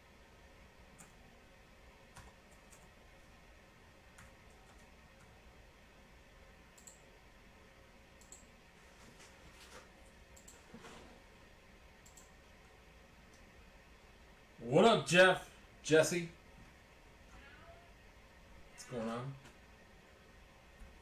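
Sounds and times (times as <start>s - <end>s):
faint irregular clicks: 0.9s - 1.2s, 2.1s - 3.3s, 4.1s - 5.4s, 6.7s - 7.1s, 8.2s - 8.6s, 9.2s - 10.7s, 12.0s - 13.5s.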